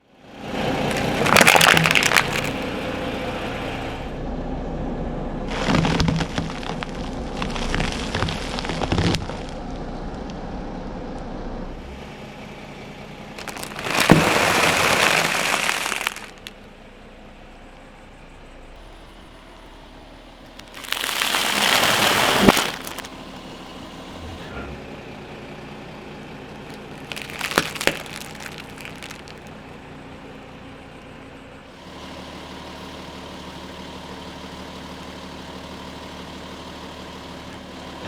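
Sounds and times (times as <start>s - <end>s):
tyre crushing crunchy objects: 0.5s - 3.7s, 5.5s - 9.7s, 13.3s - 16.6s, 20.4s - 23.6s, 26.5s - 29.6s.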